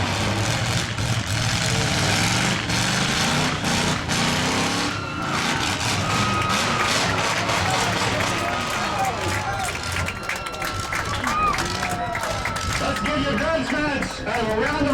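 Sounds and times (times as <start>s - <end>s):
car engines revving: 0.0s - 14.9s.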